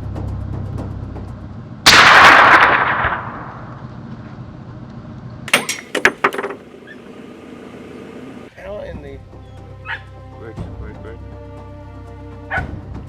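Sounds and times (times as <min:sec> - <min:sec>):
rifle shot: 0:01.9 - 0:03.9.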